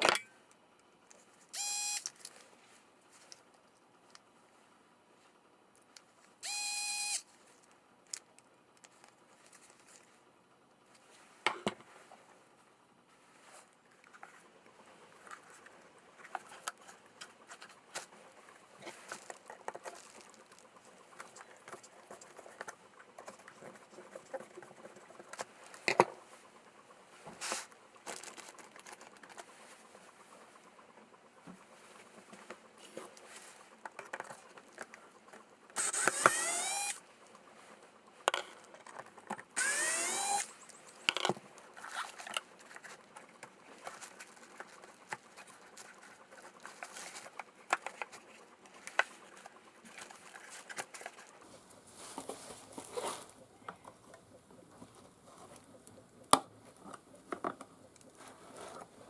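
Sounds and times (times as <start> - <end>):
parts clicking and rattling: 14.0 - 26.4, 27.4 - 51.4.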